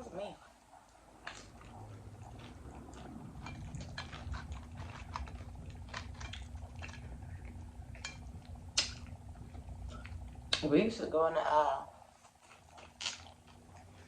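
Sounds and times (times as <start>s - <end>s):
close chewing with crunches: 0.4s - 11.0s, 11.8s - 14.0s
mouth clicks: 8.6s - 9.2s.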